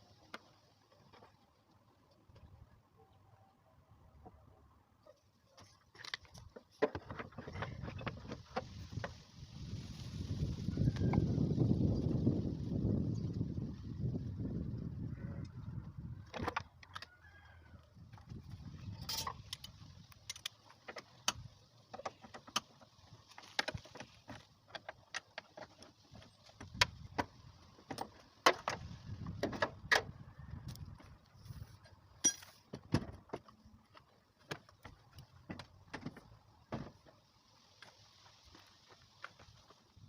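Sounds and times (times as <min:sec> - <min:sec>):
metallic clicks and clinks of tools: 0:19.0 - 0:20.6, 0:32.2 - 0:32.6.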